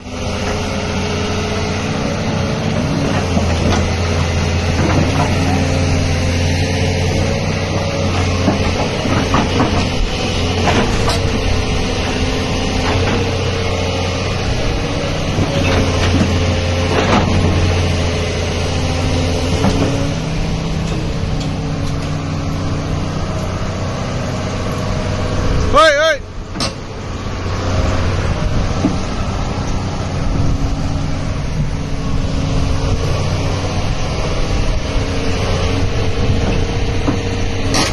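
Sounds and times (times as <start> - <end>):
excavator diesel engine drone: 0.0 - 37.9
knocks and clanks: 3.0 - 4.0, 4.6 - 5.7, 7.7 - 11.5, 12.8 - 13.4, 15.3 - 17.8, 19.4 - 22.2, 26.5 - 27.0, 28.7 - 29.2, 36.3 - 37.9.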